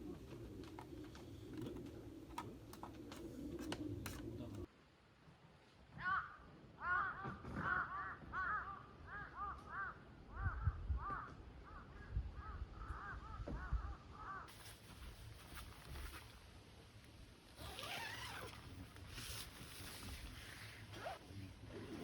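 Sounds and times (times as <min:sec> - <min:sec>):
crows cawing: 0:06.0 - 0:14.5
rustling hiss: 0:14.5 - 0:22.0.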